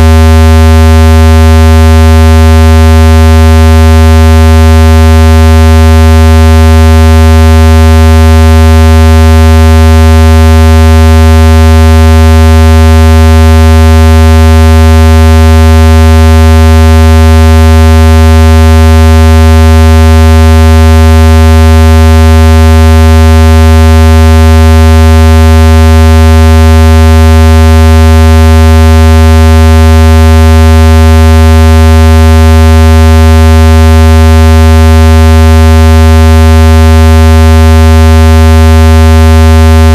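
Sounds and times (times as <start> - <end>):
low buzzing tone: 0.0 - 0.3.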